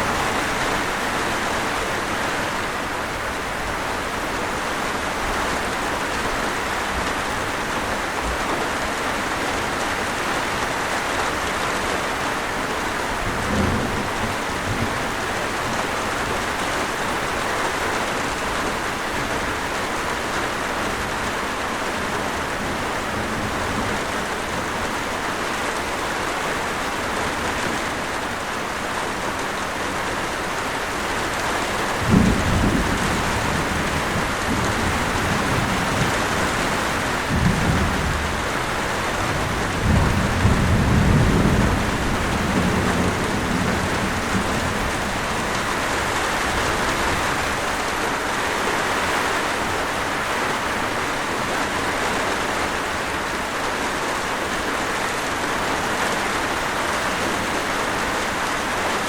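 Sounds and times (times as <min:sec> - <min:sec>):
heavy rain falling: 0:00.0 - 0:59.0
distant thunder rumbling: 0:13.2 - 0:17.1, 0:31.9 - 0:47.8.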